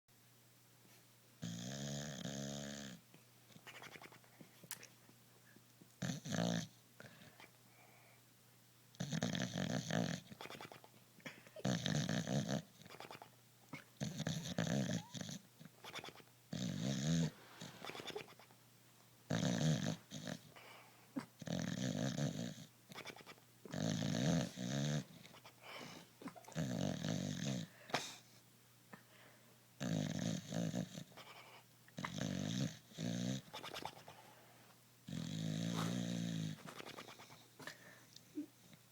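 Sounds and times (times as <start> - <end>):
dog snoring: 1.4 - 3.0, 6.0 - 7.4, 9.0 - 10.8, 11.6 - 13.3, 14.0 - 18.5, 19.3 - 20.7, 21.3 - 25.5, 26.4 - 27.7, 29.8 - 34.0, 35.1 - 37.4.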